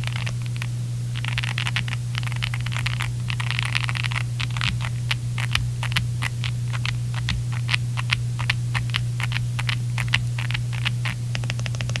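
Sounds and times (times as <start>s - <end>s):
low steady hum: 0.0s - 12.0s
mechanical keyboard typing: 0.0s - 12.0s.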